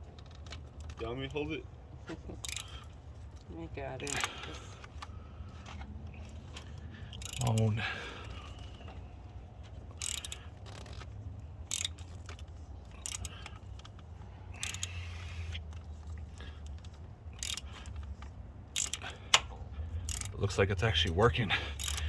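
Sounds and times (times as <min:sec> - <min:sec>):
ratchet clicking: 0:02.4 - 0:03.0, 0:04.0 - 0:05.1, 0:06.2 - 0:08.8, 0:09.9 - 0:22.0.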